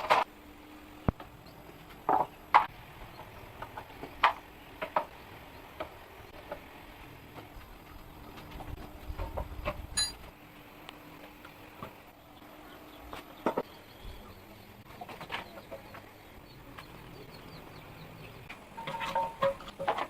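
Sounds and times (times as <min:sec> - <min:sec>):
ringing metallic clink: 0:10.0 - 0:10.2.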